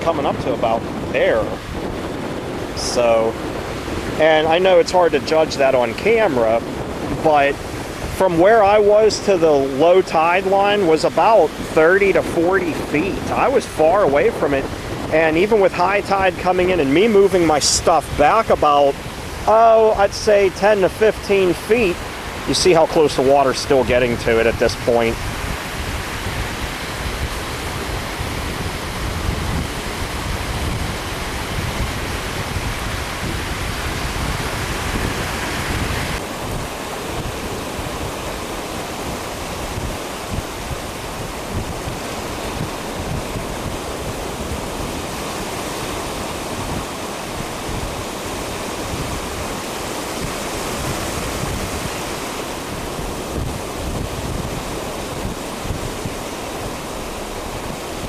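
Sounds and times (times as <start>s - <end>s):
surf breaking on beach: 0.0s - 58.0s
wind buffeting microphone: 0.0s - 58.0s.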